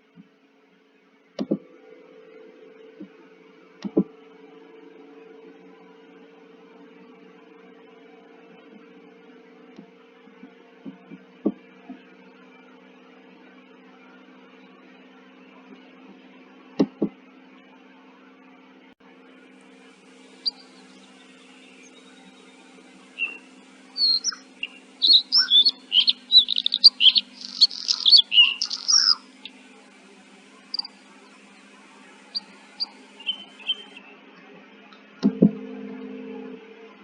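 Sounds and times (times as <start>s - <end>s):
birds chirping: 20.2s - 29.7s, 30.7s - 34.0s.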